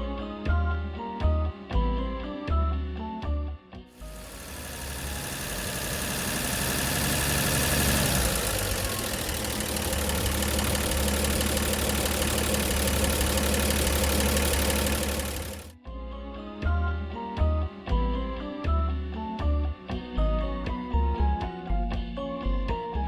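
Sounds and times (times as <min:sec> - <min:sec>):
generator whirring: 0:04.0 - 0:15.7.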